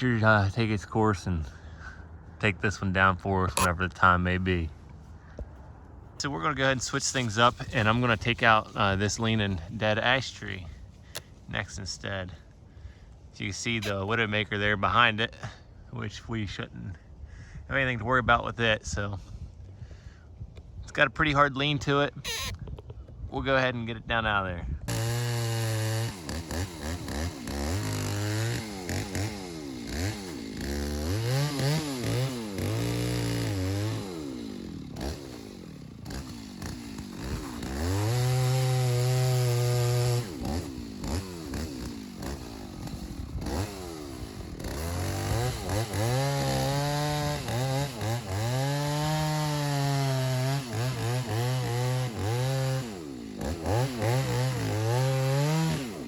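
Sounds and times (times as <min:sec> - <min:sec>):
chainsaw cutting wood: 0:03.5 - 0:03.9, 0:07.1 - 0:11.3, 0:13.8 - 0:14.2, 0:22.3 - 0:22.7, 0:24.9 - 0:56.0.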